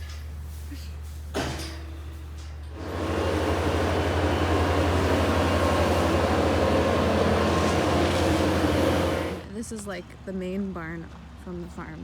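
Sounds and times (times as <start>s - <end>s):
machine running with pulsing hum: 1.7s - 9.4s.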